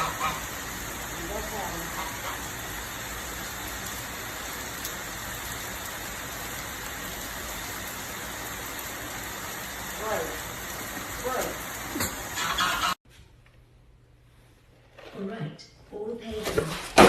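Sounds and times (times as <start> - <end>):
rain-like hiss: 0.0 - 13.0.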